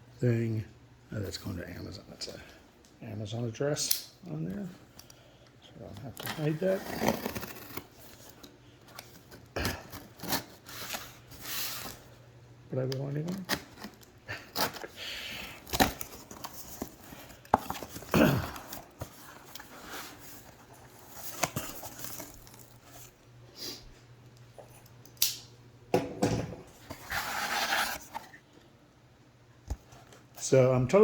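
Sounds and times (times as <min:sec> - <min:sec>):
rustling and scraping of packaging: 0:05.8 - 0:12.2, 0:13.1 - 0:23.2, 0:26.7 - 0:28.5.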